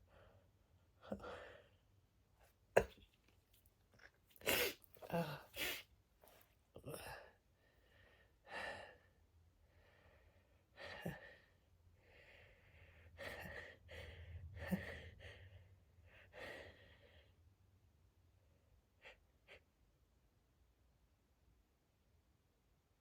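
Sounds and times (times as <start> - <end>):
person gasping and sighing: 4.4 - 5.8.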